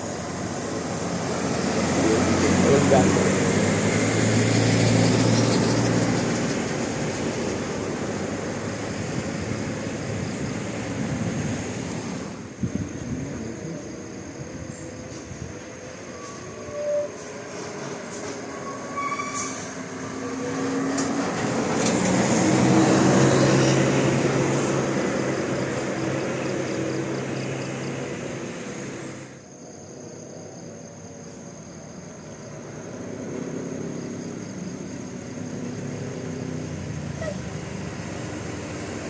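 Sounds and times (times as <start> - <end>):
bus engine hum: 0.0 - 39.0
road noise: 0.0 - 39.0.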